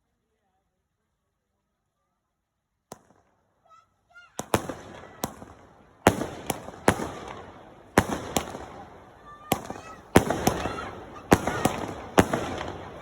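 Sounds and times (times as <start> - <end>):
firework bangs: 4.4 - 13.0
firework crackling: 4.4 - 13.0.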